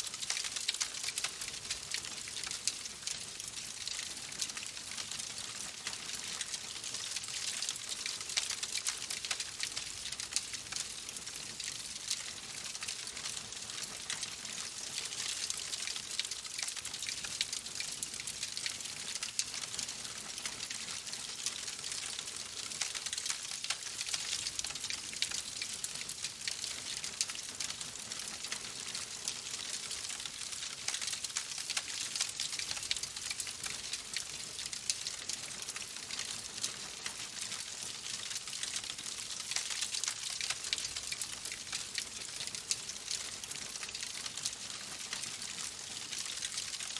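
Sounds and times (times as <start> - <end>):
logs burning with crackles and pops: 0.0 - 46.9.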